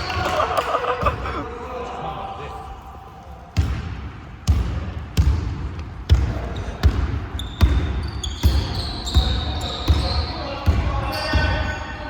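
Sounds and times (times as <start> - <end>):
basketball bouncing on gym floor: 3.6 - 11.7.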